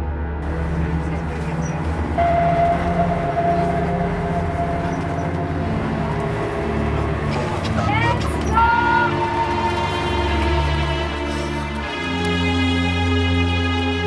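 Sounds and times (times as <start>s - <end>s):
high whine: 0.4s - 14.0s
vehicle engine rumble: 0.4s - 14.0s.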